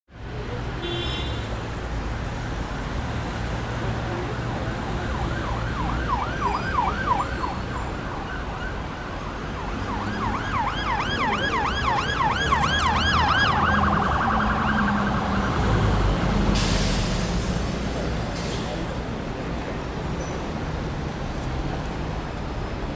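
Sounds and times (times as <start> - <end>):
traffic rumble: 0.1 - 22.9
emergency siren yelping: 4.2 - 16.1.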